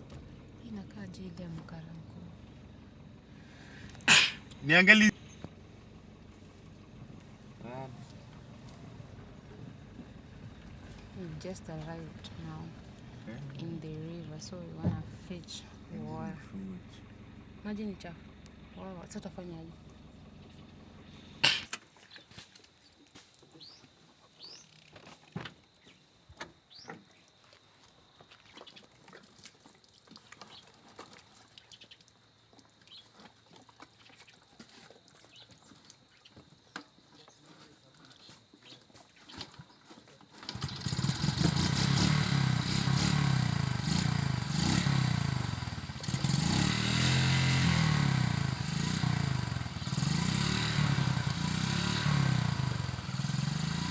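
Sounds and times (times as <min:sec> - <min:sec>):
vehicle engine starting and revving: 0:00.0 - 0:21.6, 0:40.4 - 0:53.9.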